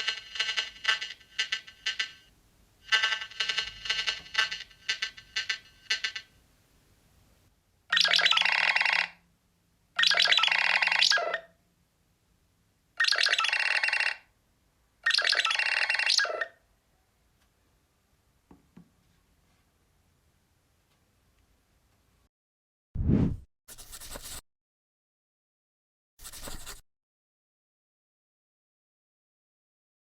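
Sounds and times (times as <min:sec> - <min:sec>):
phone ringtone: 0:00.0 - 0:02.3, 0:02.9 - 0:06.3, 0:08.0 - 0:09.2, 0:13.1 - 0:14.3, 0:15.4 - 0:16.2.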